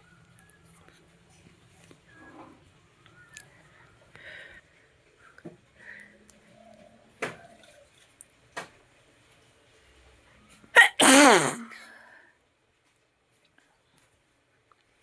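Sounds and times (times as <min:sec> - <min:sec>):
person sneezing: 0:10.8 - 0:11.8.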